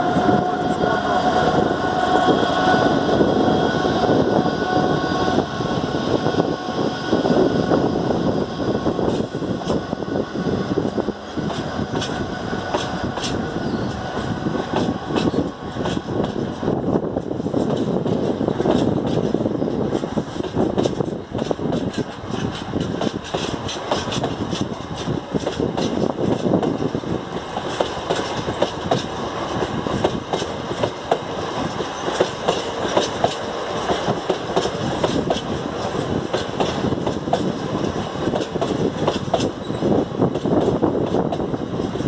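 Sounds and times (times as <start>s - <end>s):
train wheels rumbling on rail: 0.0s - 42.0s
wheels clicking over rail joints: 17.6s - 42.0s.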